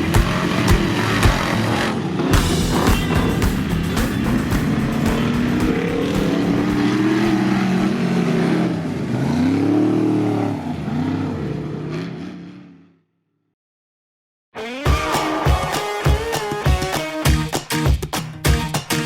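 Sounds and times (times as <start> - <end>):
race vehicle engine revving: 0.0 - 13.0.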